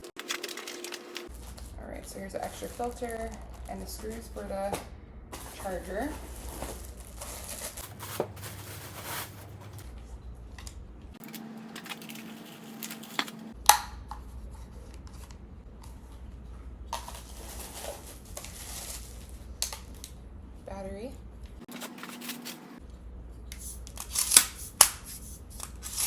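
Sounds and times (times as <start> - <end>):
packaging rustling and tearing: 0.0 - 1.8, 5.4 - 9.8, 11.2 - 13.6, 17.0 - 19.4, 21.7 - 22.8.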